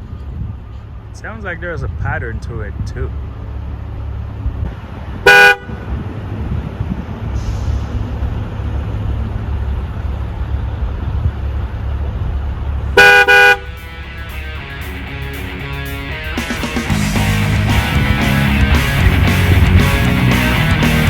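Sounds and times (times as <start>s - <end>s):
car horn honking: 5.2s - 6.0s, 13.0s - 14.3s.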